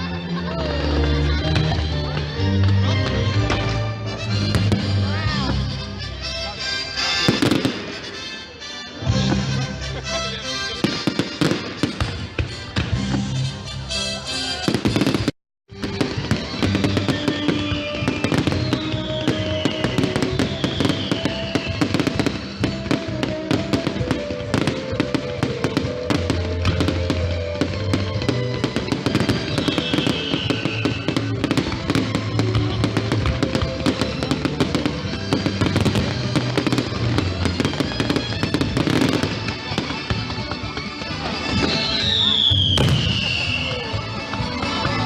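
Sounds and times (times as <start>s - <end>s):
fireworks bangs and crackles: 0.2s - 10.0s, 10.6s - 45.0s
firework whistles falling: 14.5s - 24.8s, 29.1s - 32.1s, 41.5s - 43.9s
music over sound system: 15.8s - 45.0s.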